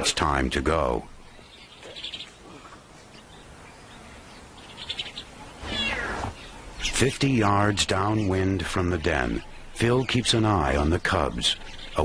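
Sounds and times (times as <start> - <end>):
lion cubs mewing: 4.9 - 6.9.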